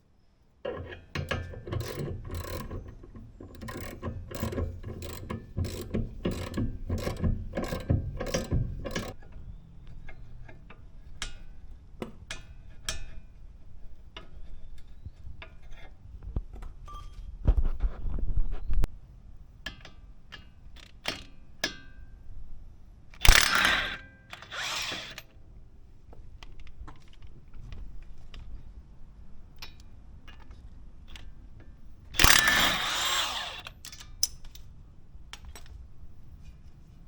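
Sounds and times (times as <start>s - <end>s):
power tool bursts: 23.2s - 25.2s, 32.2s - 33.7s.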